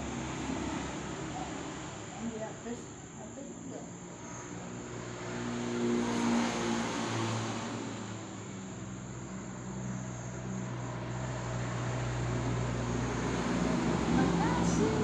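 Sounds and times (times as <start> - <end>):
vehicle engine passing by: 0.0 - 3.1, 4.1 - 15.0.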